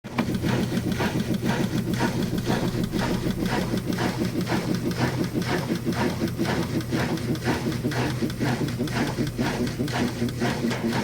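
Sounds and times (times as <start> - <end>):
rhythmic knocking: 0.1 - 11.0
washing machine humming: 0.1 - 11.0.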